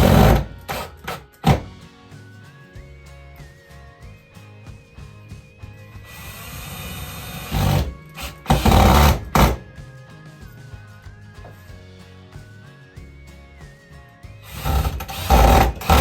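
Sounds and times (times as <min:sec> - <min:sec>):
power drill driving screws into wood: 0:00.0 - 0:01.7, 0:06.1 - 0:09.7, 0:14.5 - 0:16.0
background music: 0:00.0 - 0:16.0.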